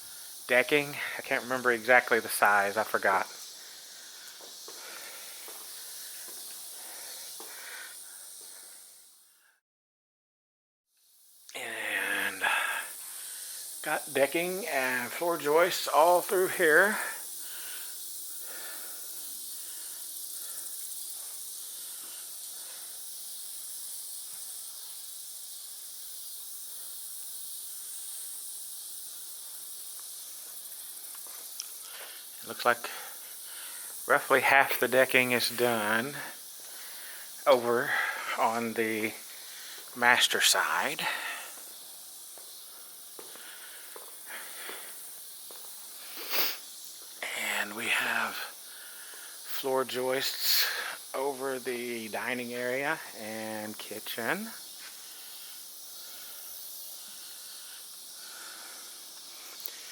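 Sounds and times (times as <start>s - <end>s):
high-pitched hiss: 0.0s - 9.6s, 10.9s - 59.9s
breath-like rush: 3.3s - 9.1s, 11.6s - 13.9s, 16.8s - 23.1s, 31.8s - 34.1s, 36.1s - 38.4s, 40.9s - 41.8s, 43.3s - 45.1s, 54.9s - 59.9s.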